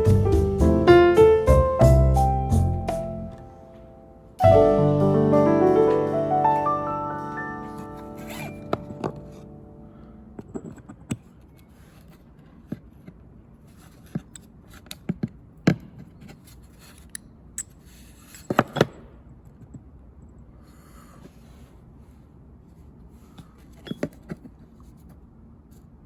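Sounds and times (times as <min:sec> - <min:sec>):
tools clicking on metal parts: 0:16.8 - 0:19.8.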